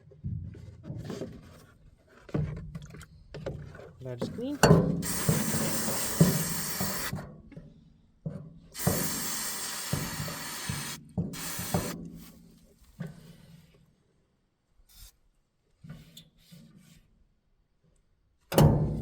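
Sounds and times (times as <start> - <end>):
aerosol spray hissing: 5.0 - 7.1, 8.8 - 12.3.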